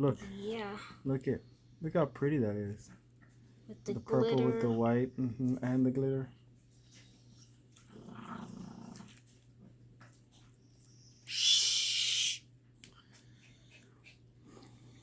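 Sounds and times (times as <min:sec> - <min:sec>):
person shushing: 0:11.3 - 0:12.4.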